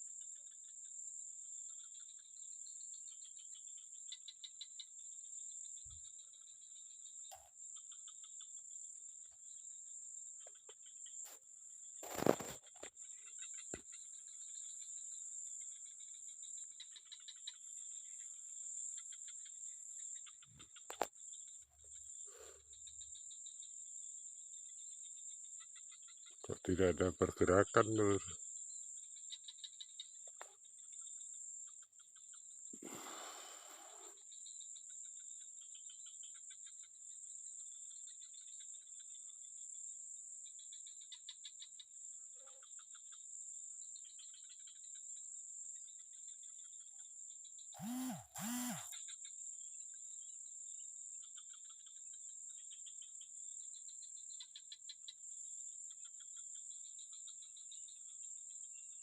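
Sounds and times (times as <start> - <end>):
insects droning: 0.0 - 59.0
rustle: 10.4 - 14.7, 32.7 - 34.5
chirring trills: 47.8 - 49.0.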